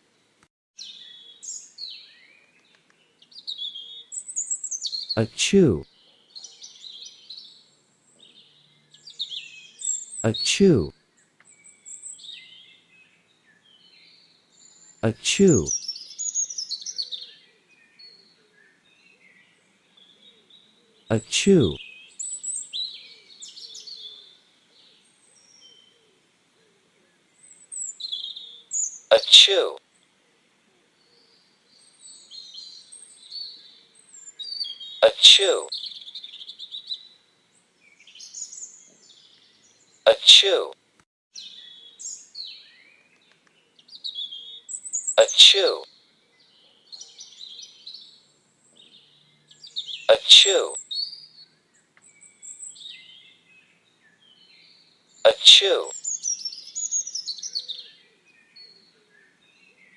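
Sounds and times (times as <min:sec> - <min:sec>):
birds chirping: 0:00.8 - 0:40.8, 0:41.4 - 0:59.9
cartoon sneeze: 0:35.0 - 0:35.7, 0:40.1 - 0:40.8, 0:45.2 - 0:45.8, 0:50.1 - 0:50.8, 0:55.3 - 0:55.9.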